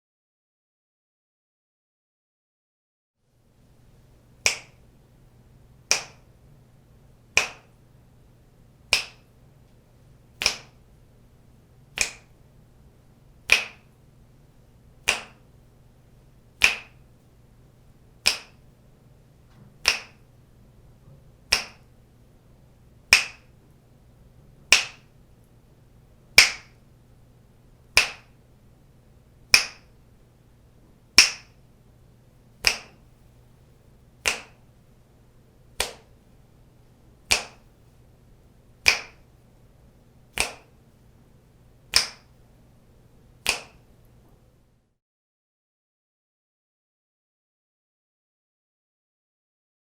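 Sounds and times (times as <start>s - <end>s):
faint low hum: 3.2s - 45.0s
fingers snapping: 4.4s - 4.8s, 5.9s - 6.2s, 7.4s - 7.7s, 8.9s - 9.3s, 10.4s - 10.8s, 12.0s - 12.4s, 13.5s - 13.9s, 15.0s - 15.4s, 16.6s - 17.0s, 18.2s - 18.6s, 19.8s - 20.2s, 21.5s - 21.9s, 23.1s - 23.5s, 24.7s - 25.0s, 26.4s - 26.8s, 27.9s - 28.4s, 29.5s - 29.9s, 31.2s - 31.6s, 32.6s - 33.0s, 34.2s - 34.6s, 35.8s - 36.1s, 37.3s - 37.7s, 38.8s - 39.2s, 40.3s - 40.8s, 41.9s - 42.4s, 43.4s - 43.9s.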